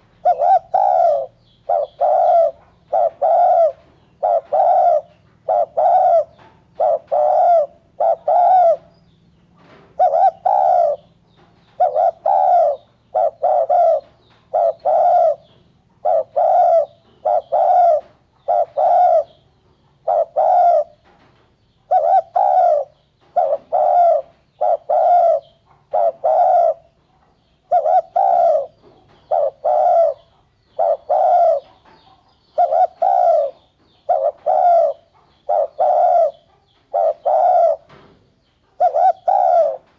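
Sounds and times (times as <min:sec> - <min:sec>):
dove cooing: 0:00.0 - 0:08.9, 0:09.6 - 0:21.2, 0:21.8 - 0:39.9.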